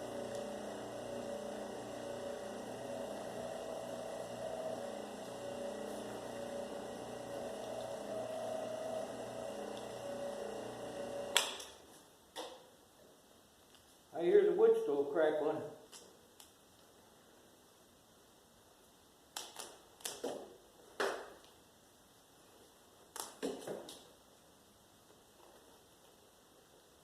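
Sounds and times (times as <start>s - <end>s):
machine motor humming: 0.0s - 11.6s.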